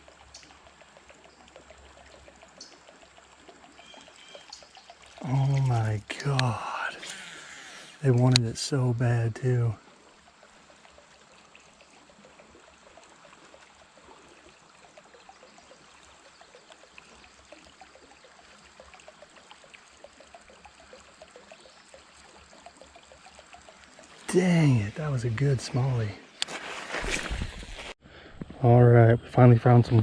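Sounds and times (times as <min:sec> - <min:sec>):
small water plinks: 0:00.0 - 0:26.5
creek water babbling: 0:00.0 - 0:28.4.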